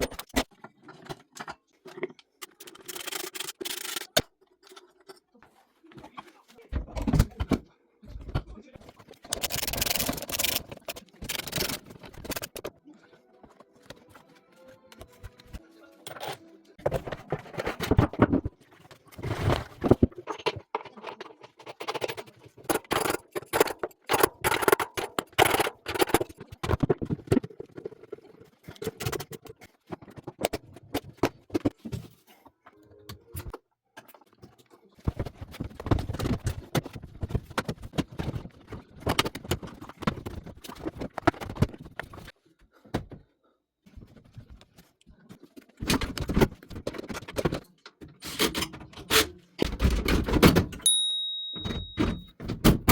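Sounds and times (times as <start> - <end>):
tools clattering on metal: 19.3 - 26.9.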